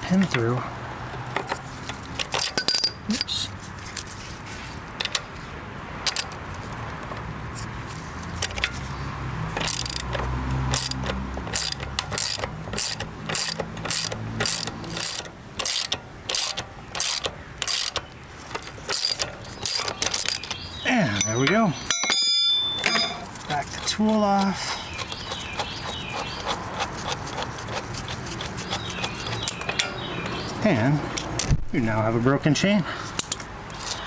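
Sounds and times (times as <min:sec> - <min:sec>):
ratchet wrench clicking: 0:09.6 - 0:20.6.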